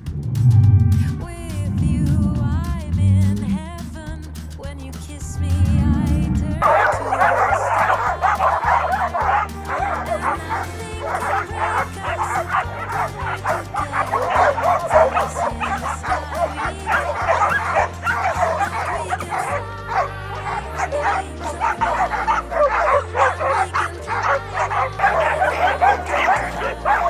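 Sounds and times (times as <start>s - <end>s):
background music with bass line: 0.0s - 27.0s
dogs barking and yipping: 6.6s - 27.0s.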